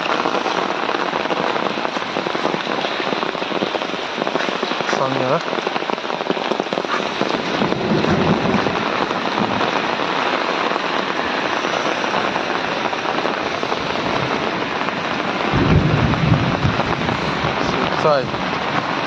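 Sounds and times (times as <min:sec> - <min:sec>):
hail and rain pelting down: 0:00.0 - 0:19.0
low rumble: 0:15.5 - 0:18.0.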